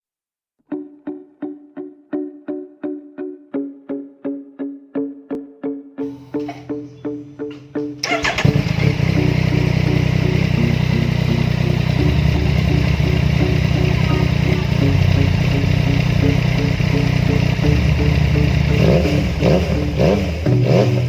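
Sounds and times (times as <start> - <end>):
motorcycle engine starting and idling: 8.0 - 21.0.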